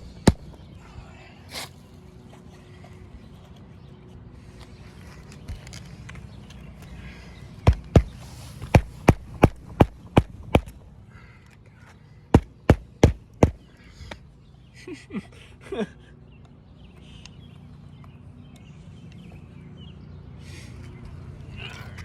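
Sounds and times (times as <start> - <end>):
hammer striking roofing nails: 0.0 - 0.6, 7.6 - 10.8, 12.3 - 13.6.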